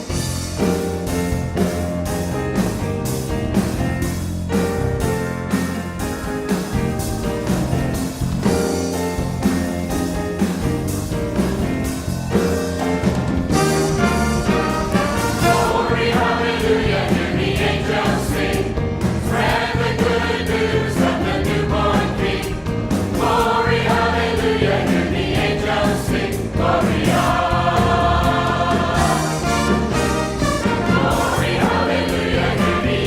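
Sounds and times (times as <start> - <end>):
orchestra and band accompaniment: 0.0 - 33.0
choir singing gospel song: 13.5 - 33.0.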